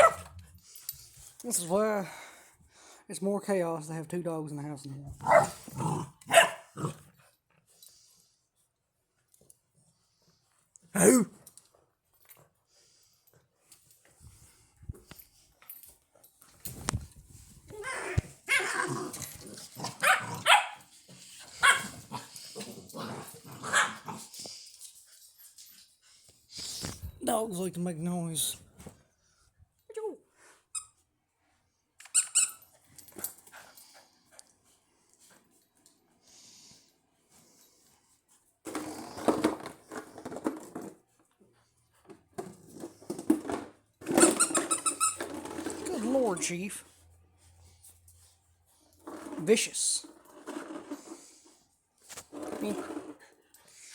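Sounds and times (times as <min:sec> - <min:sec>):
puppies barking: 0:00.0 - 0:00.3, 0:05.2 - 0:05.6
puppies growling: 0:05.2 - 0:07.2, 0:17.7 - 0:20.6
puppies play-fighting: 0:15.2 - 0:27.0.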